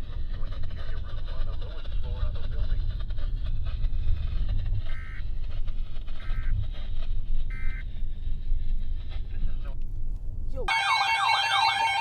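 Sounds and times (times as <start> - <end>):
steady low rumble: 0.0 - 10.7.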